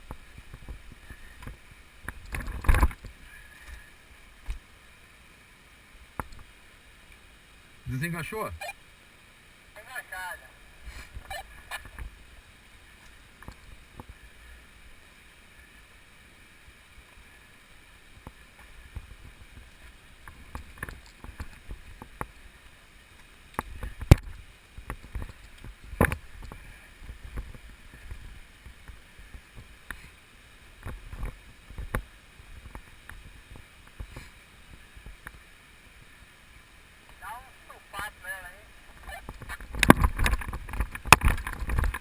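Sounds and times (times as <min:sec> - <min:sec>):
wind rumble on microphone: 0:38.9 - 0:42.0.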